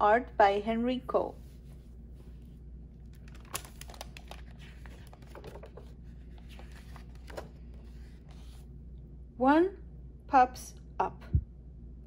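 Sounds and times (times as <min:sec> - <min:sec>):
low steady hum: 0:00.0 - 0:12.0
paper pages rustling: 0:01.4 - 0:08.7.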